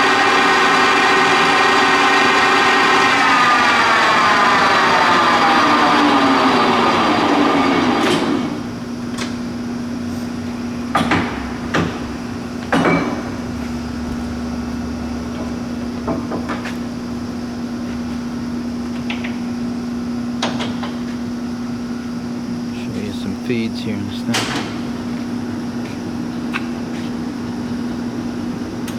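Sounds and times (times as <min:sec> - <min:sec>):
lathe gear whine: 0:00.0 - 0:28.9
steady machine hum: 0:00.0 - 0:28.9
lever metallic clunks: 0:24.3 - 0:24.9.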